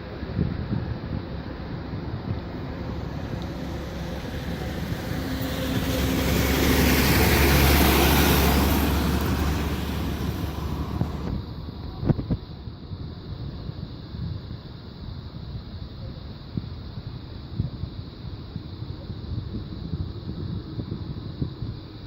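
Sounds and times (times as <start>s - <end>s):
jet airliner engine noise: 0.1s - 11.8s.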